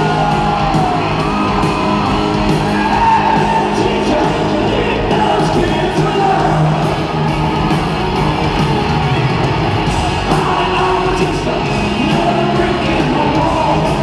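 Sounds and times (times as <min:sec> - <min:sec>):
electric guitar: 0:00.0 - 0:14.0
live hard rock band: 0:00.0 - 0:14.0
person singing: 0:10.2 - 0:14.0.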